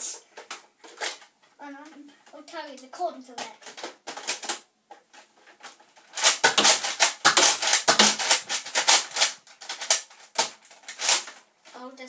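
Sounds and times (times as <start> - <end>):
plastic toy gun clicking: 6.1 - 11.4.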